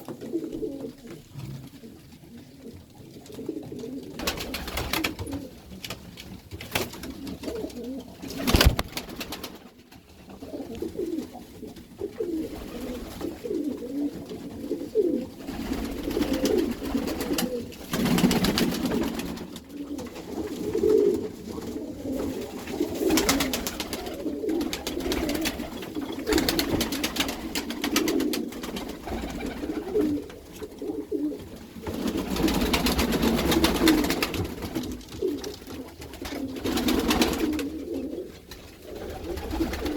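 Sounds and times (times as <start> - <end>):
pigeons cooing: 0.0 - 39.9
noisy rustling: 8.2 - 13.6.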